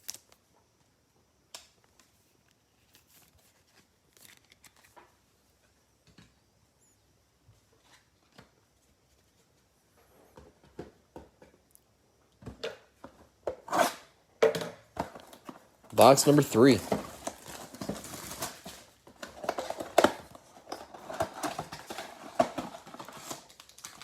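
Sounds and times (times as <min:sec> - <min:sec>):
trading cards clicking and rustling: 0:02.8 - 0:05.0.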